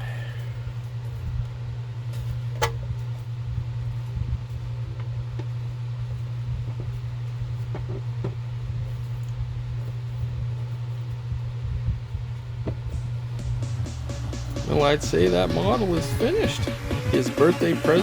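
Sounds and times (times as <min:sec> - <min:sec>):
steady low hum: 0:00.0 - 0:18.0
low rumble: 0:11.2 - 0:17.7.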